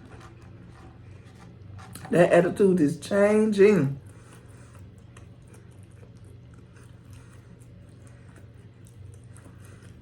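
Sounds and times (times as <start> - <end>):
steady low hum: 0.0 - 10.0
chewing with mouth clicks: 4.0 - 10.0.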